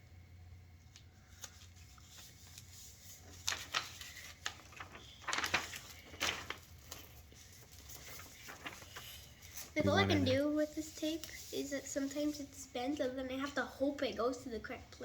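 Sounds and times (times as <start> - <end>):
paper rustling: 0.9 - 12.5.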